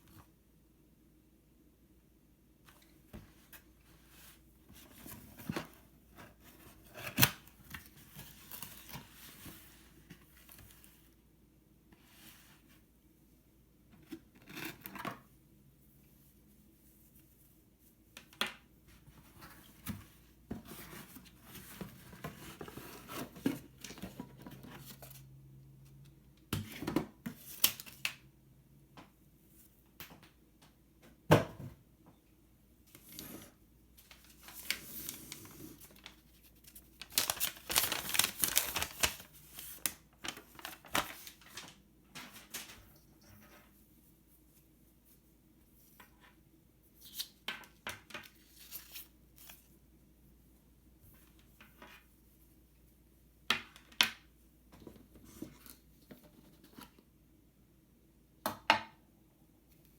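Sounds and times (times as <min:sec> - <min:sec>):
packaging rustling and tearing: 0:34.0 - 0:41.7.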